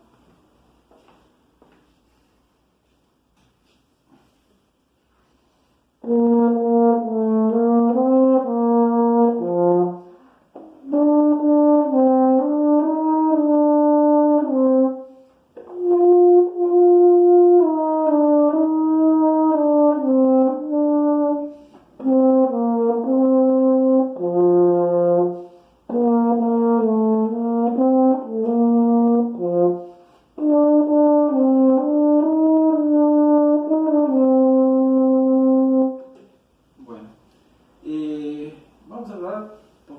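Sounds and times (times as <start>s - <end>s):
euphonium melody: 6.0s - 36.2s.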